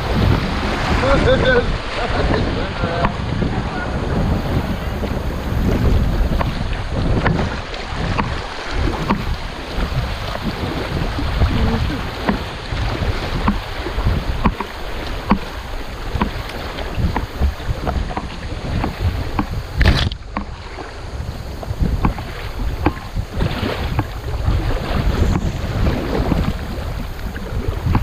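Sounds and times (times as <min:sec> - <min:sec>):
flood water rushing and splashing: 0:00.0 - 0:28.0
wind buffeting microphone: 0:00.0 - 0:28.0
knocks against kayak hull: 0:02.2 - 0:03.2, 0:05.0 - 0:20.6, 0:21.6 - 0:24.4, 0:25.1 - 0:28.0.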